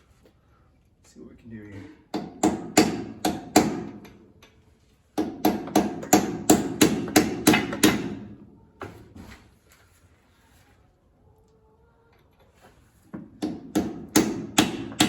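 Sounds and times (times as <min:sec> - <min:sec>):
hammer striking steel: 0:13.4 - 0:15.0.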